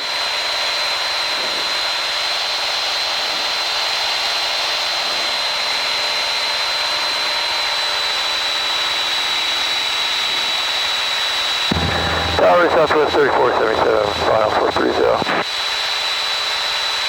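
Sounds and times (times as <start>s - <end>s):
aircraft cabin engine hiss: 11.7s - 15.4s
high-pitched steady whine: 11.7s - 15.4s.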